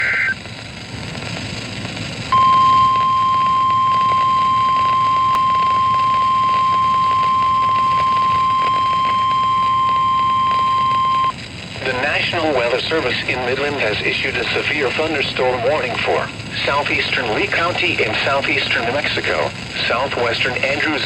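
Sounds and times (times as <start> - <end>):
radio hiss: 0.0 - 0.6, 2.2 - 21.0
data burst: 2.3 - 12.4
steady alarm beep: 2.4 - 11.3.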